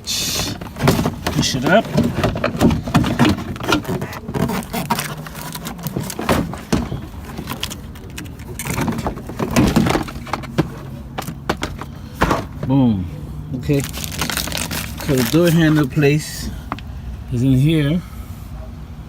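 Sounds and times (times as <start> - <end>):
plastic parts snapping: 0.3 - 12.7.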